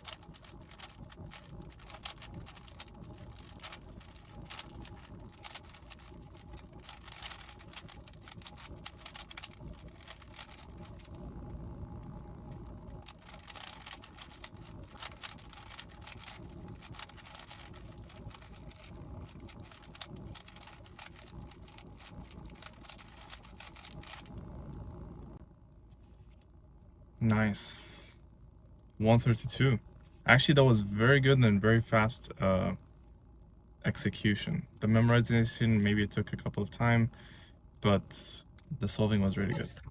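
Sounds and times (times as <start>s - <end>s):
plastic cube layers clicking: 0.0s - 11.1s
low steady hum: 0.0s - 39.9s.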